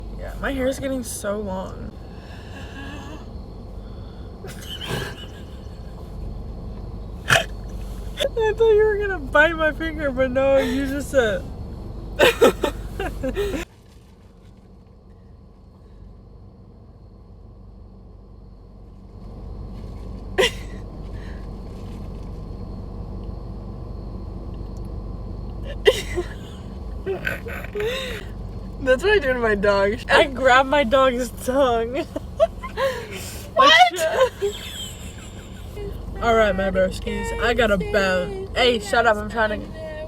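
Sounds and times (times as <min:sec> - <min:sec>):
car road rumble: 0:00.0 - 0:40.0
breathy vocal squeal: 0:02.0 - 0:05.3, 0:25.6 - 0:28.4.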